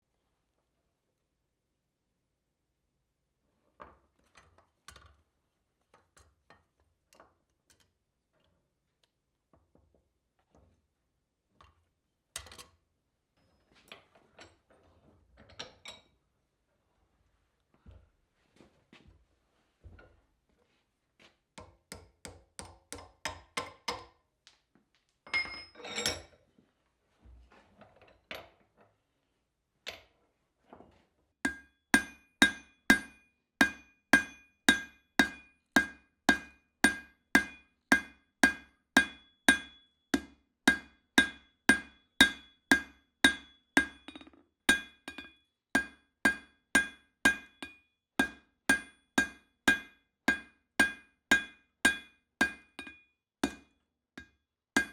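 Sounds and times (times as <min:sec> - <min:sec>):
forging hammer striking steel: 0:31.5 - 0:44.0, 0:44.7 - 0:53.7.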